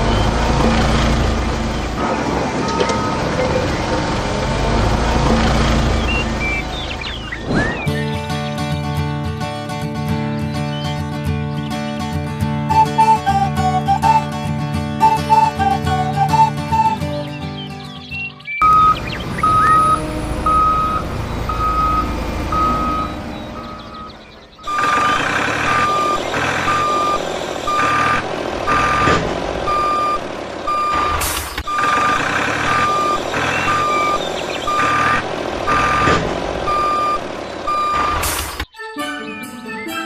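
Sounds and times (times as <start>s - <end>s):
heavy vehicle engine running: 0.0s - 9.6s, 12.1s - 38.7s
reversing alarm beeping: 15.0s - 17.1s, 18.6s - 38.6s.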